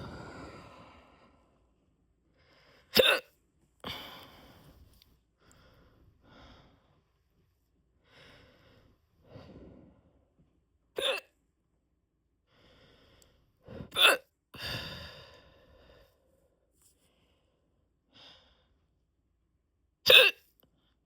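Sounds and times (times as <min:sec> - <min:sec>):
quiet breathing: 0:00.0 - 0:02.9, 0:03.8 - 0:10.6, 0:12.4 - 0:13.9, 0:14.6 - 0:19.0
person hiccupping: 0:20.1 - 0:20.4.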